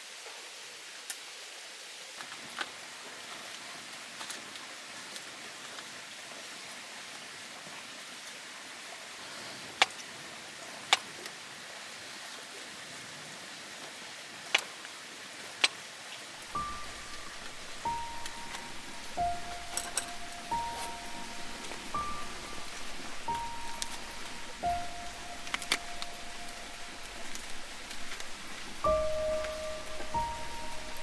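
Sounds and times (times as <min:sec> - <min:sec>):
fire crackling pops: 0:16.4 - 0:31.0
wood fire hissing: 0:16.4 - 0:31.0.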